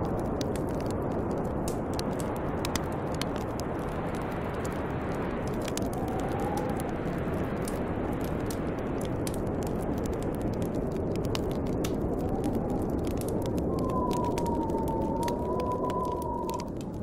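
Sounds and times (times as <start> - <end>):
snowstorm wind: 0.0 - 17.0
wood fire crackling: 0.0 - 17.0
faint whistle in wind: 5.7 - 7.4, 12.0 - 17.0.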